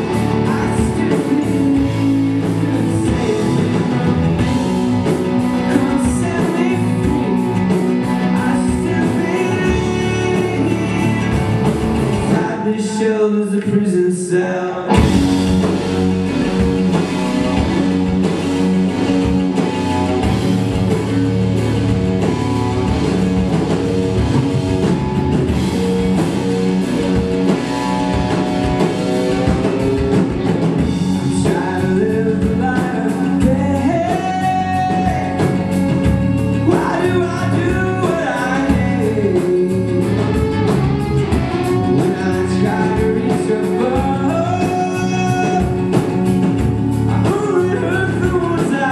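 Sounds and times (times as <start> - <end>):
lead vocal over band: 0.0 - 18.0, 30.9 - 40.6, 41.4 - 46.3, 47.0 - 48.9
rock band playing live: 0.0 - 48.9.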